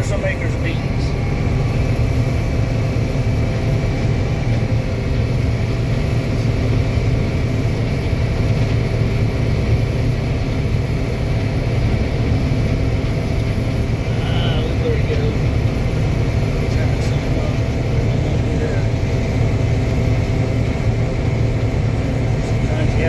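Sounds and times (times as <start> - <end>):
low engine drone: 0.0 - 23.0
machinery humming: 0.0 - 23.0.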